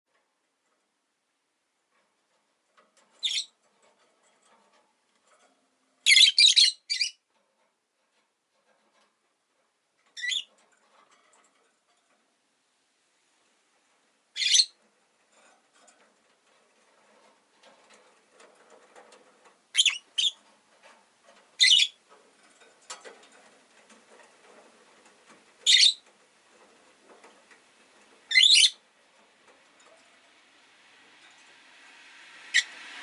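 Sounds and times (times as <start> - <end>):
faint rustling and clicking: 0.1 - 6.1, 6.8 - 33.0
shrill bird calls: 14.4 - 14.7, 21.6 - 21.9, 25.7 - 26.0, 28.3 - 28.8.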